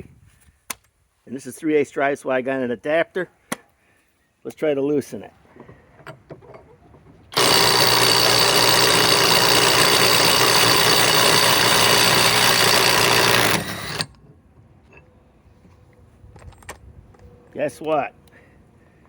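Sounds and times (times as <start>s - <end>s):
impact wrench hammering: 7.3s - 14.2s.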